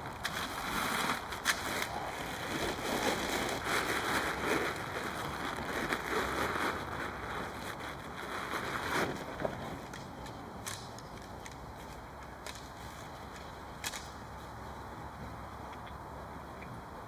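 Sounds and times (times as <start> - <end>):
dry leaves rustling and crunching: 0.0 - 14.6
twig snapping: 9.9 - 11.6, 12.2 - 14.2.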